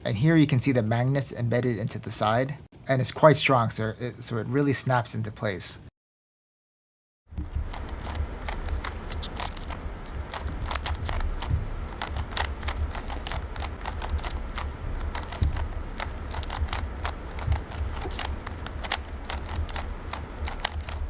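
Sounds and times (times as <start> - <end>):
speed cube layers clicking: 7.4 - 21.0.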